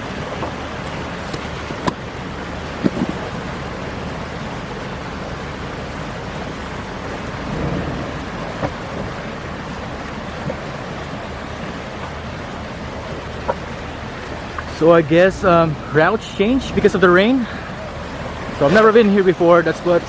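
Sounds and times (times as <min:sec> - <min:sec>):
faint low engine hum: 0:00.0 - 0:20.0
steady rushing noise: 0:00.0 - 0:20.0
small knocks: 0:02.8 - 0:03.3.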